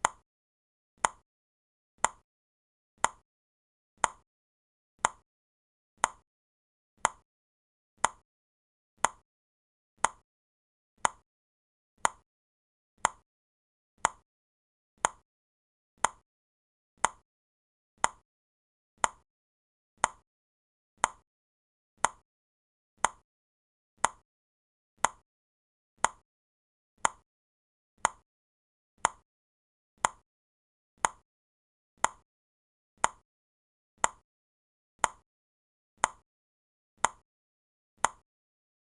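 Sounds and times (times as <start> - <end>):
timer ticking: 4.0 - 4.2, 21.0 - 21.2.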